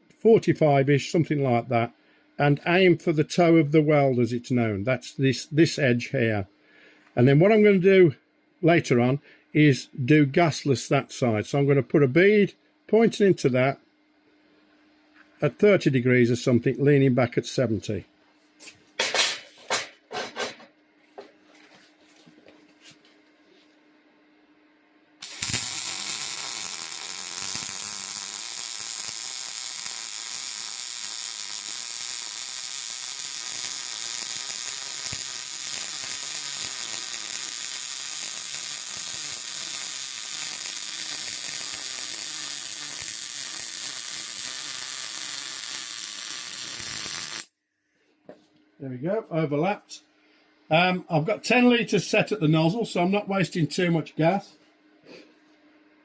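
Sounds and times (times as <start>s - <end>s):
welding arc crackling sizzle: 25.2s - 47.5s.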